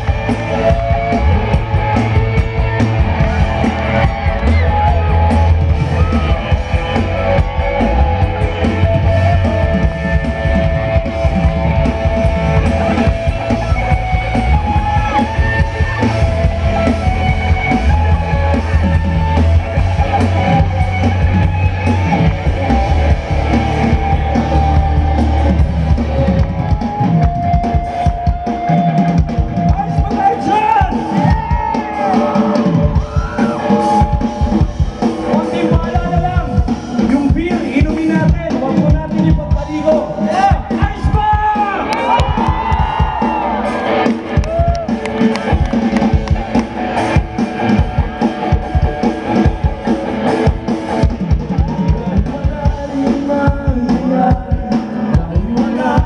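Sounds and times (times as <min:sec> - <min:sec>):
drum kit: 0:00.0 - 0:56.0
electric guitar: 0:00.0 - 0:56.0
heavy bass line: 0:00.0 - 0:56.0
person singing: 0:51.6 - 0:56.0.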